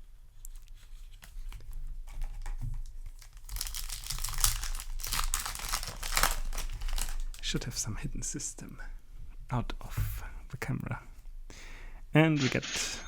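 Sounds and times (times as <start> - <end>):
foil wrapper crinkling and tearing: 0.4 - 7.5.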